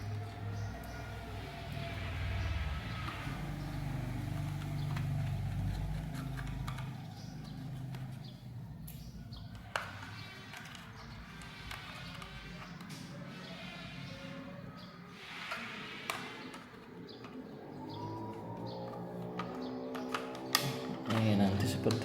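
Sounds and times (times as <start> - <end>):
laptop parts clicking and tapping: 3.0 - 13.8, 15.4 - 22.0.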